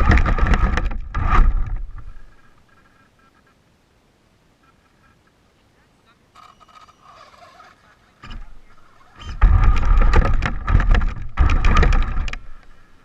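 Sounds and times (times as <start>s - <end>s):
tyres on gravel: 0.0s - 2.6s, 8.3s - 13.0s.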